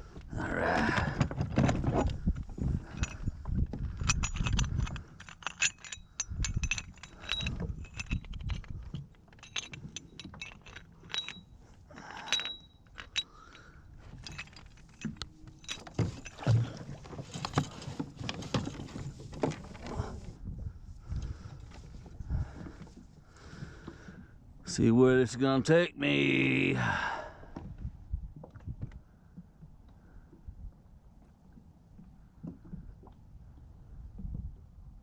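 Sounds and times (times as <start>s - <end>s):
low rumbling bumps: 0.0s - 11.4s
gear clicking and jingling: 1.6s - 20.2s.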